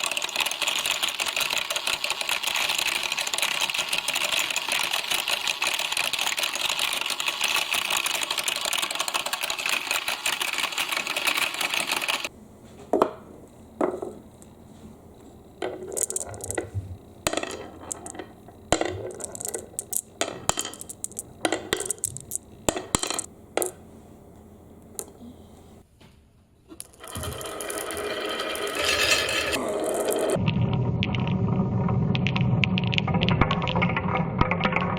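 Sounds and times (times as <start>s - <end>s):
glass marbles clicking: 0.0s - 12.3s, 15.7s - 23.8s, 26.8s - 30.4s
glass marbles rattling: 0.0s - 12.3s, 15.6s - 23.8s, 26.8s - 30.4s
toy washing machine running: 0.0s - 12.3s, 26.8s - 30.4s.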